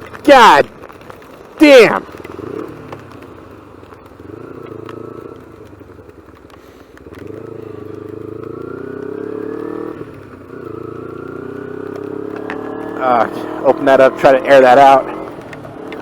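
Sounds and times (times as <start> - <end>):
motorcycle engine accelerating: 0.0 - 16.0
light ticks: 2.1 - 9.2.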